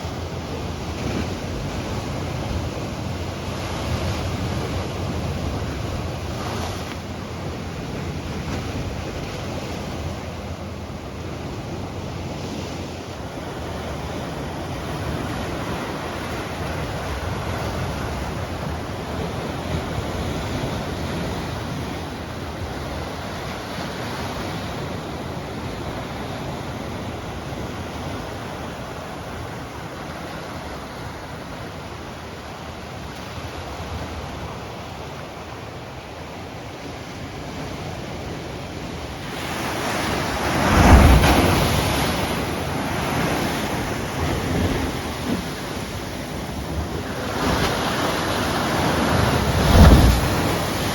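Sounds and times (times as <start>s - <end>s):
ocean surf: 0.0s - 50.9s
wind buffeting microphone: 37.4s - 50.9s
wave breaking: 39.1s - 50.9s.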